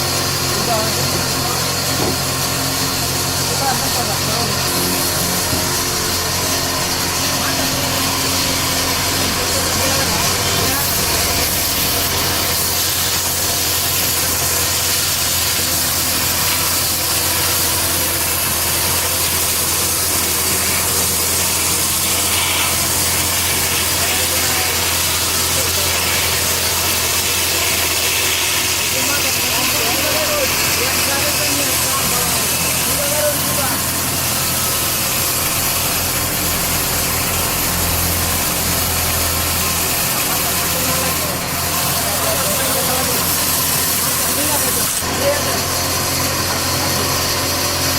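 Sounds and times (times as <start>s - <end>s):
power saw running: 0.0s - 47.9s.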